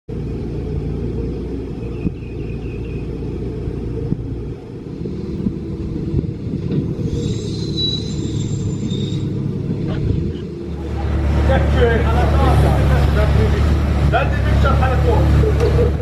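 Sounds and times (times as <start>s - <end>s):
diesel engine rumbling: 0.1s - 16.0s.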